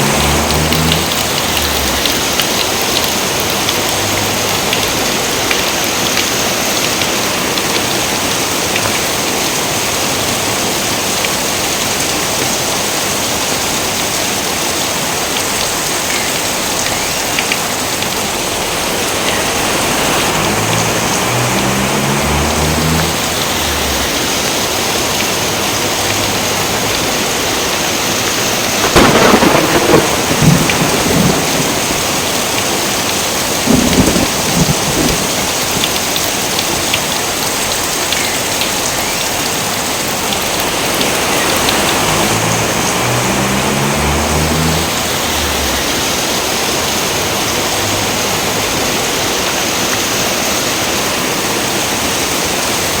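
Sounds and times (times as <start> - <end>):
crackling thunderclaps: 0.0 - 6.4, 28.6 - 37.0
heavy rain: 0.0 - 53.0
low thunder rumble: 28.8 - 36.2.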